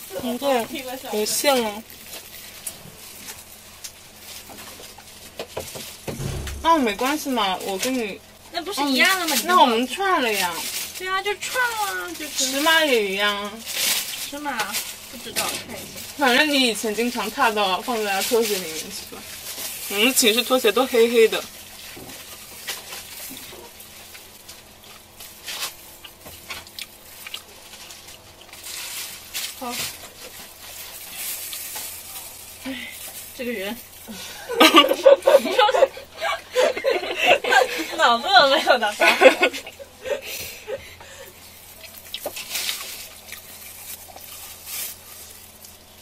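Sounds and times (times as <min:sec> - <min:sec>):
chewing food: 0:21.6 - 0:33.2, 0:41.3 - 0:46.0
chewing clicks and smacks: 0:26.0 - 0:28.6, 0:41.8 - 0:42.5.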